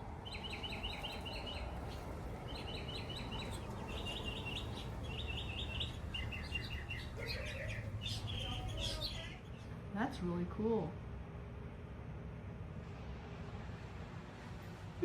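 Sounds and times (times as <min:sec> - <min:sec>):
songbird singing: 0:00.0 - 0:09.8
low background rumble: 0:00.0 - 0:15.0.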